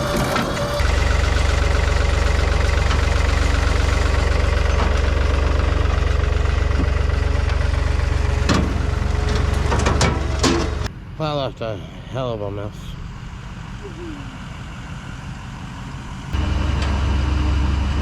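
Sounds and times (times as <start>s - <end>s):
vehicle engine idling: 0.0s - 18.0s.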